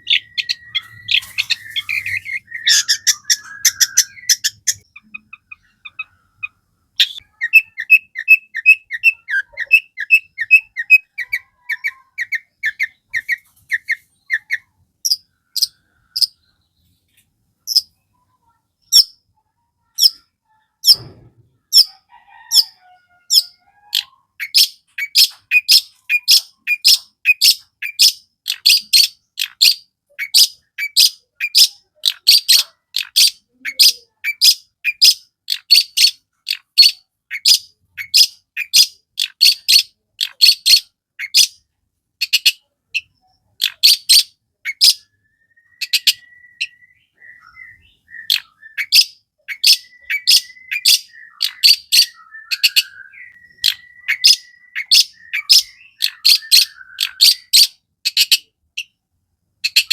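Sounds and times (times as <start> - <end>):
bird calling harsh notes: 0.0 - 16.5, 42.2 - 58.9.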